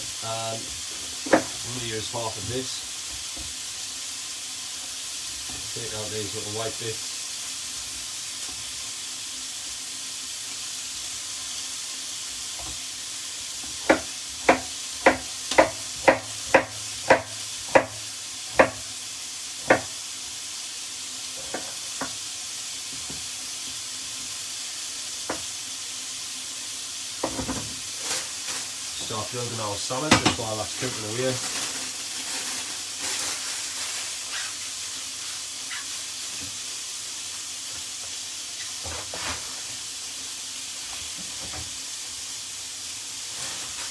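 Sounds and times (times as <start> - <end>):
chicken frying in hot oil: 0.0 - 43.9
knife chopping on cutting board: 13.8 - 18.9, 19.6 - 20.0.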